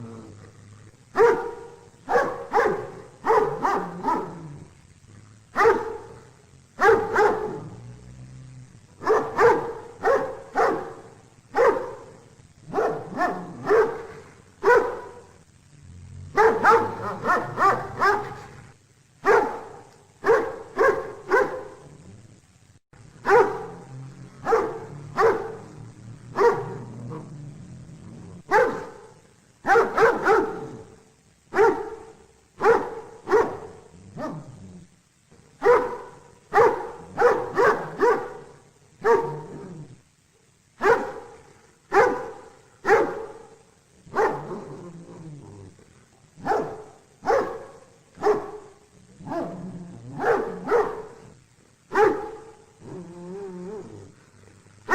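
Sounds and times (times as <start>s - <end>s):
dog barking: 1.1s - 4.6s, 5.5s - 7.8s, 9.0s - 15.4s, 16.3s - 18.6s, 19.2s - 21.9s, 23.2s - 27.2s, 28.4s - 34.5s, 35.6s - 39.8s, 40.8s - 44.8s, 46.4s - 52.6s.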